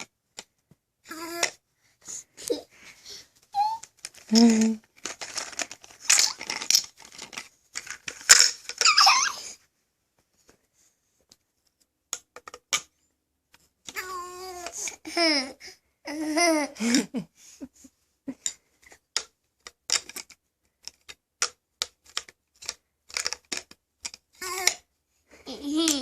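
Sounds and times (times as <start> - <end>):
high-pitched laughing squeals: 8.8 - 9.6.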